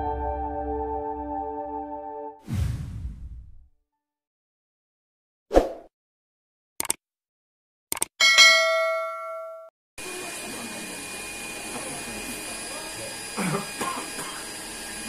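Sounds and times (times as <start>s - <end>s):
short clicks: 6.8s - 7.0s, 7.9s - 8.1s
bell ding: 8.2s - 9.7s.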